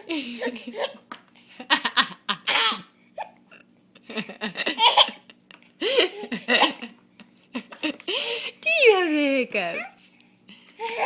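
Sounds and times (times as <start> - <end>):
baby laughing: 2.4 - 3.4, 4.7 - 5.3, 10.8 - 11.0.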